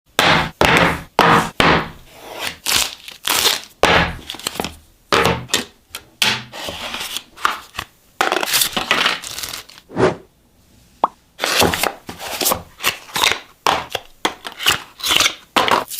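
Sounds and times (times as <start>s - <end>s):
packaging crinkling and tearing: 2.6s - 3.7s, 8.4s - 9.8s.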